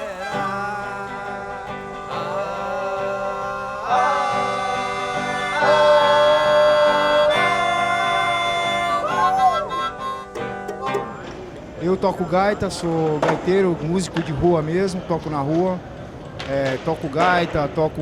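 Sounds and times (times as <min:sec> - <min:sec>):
harmonica: 0:00.0 - 0:12.9
guitar accompaniment: 0:00.0 - 0:14.0.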